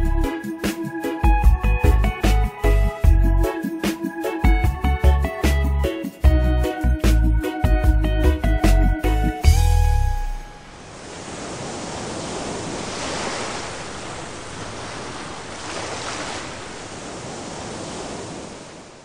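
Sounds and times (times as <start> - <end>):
song: 0.0 - 10.6.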